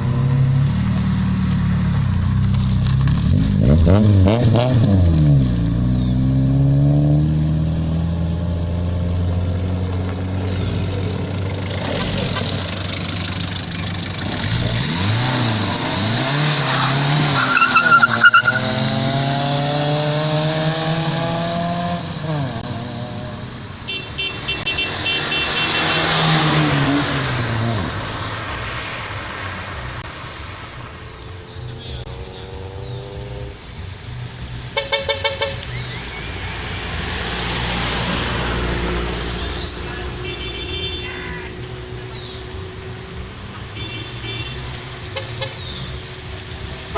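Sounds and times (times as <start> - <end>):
car engines revving by: 0.0 - 46.9.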